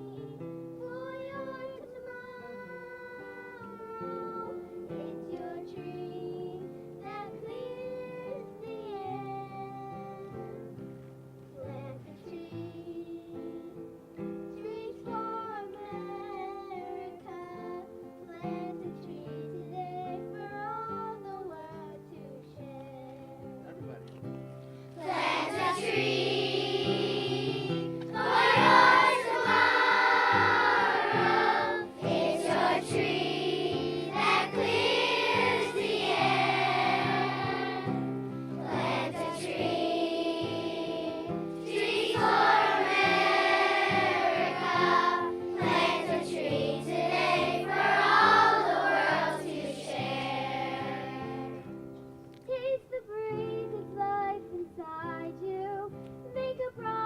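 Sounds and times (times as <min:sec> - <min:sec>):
instrumental accompaniment: 0:23.7 - 0:52.5
children singing in chorus: 0:25.0 - 0:51.7.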